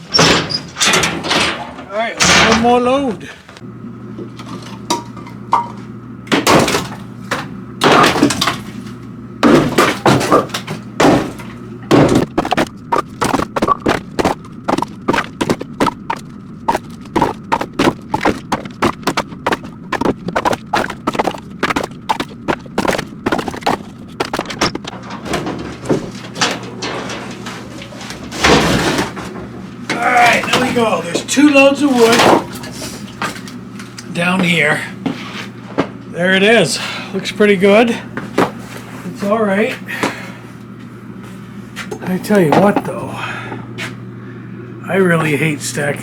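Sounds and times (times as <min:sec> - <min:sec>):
firewood logs clattering down: 0:00.0 - 0:03.1, 0:04.2 - 0:33.9.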